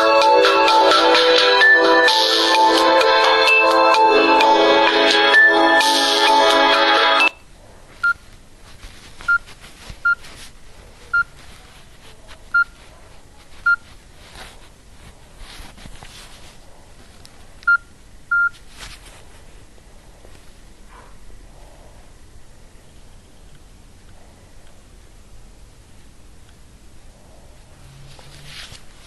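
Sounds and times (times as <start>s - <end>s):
mobile phone ringtone: 0.0s - 7.4s
keypad beeps: 11.1s - 11.3s, 12.5s - 12.8s, 13.6s - 13.8s, 17.6s - 18.5s.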